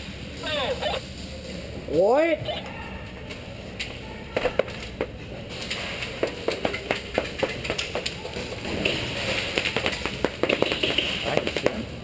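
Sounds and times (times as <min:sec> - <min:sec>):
quick footsteps: 0:04.8 - 0:11.8.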